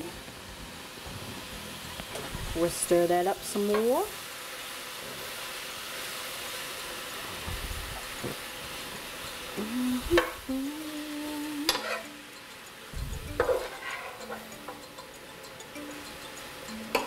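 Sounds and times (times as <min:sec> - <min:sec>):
vegetables sizzling in a frying pan: 0:00.0 - 0:17.0
utensil scraping a pan: 0:11.7 - 0:12.1, 0:13.4 - 0:14.5.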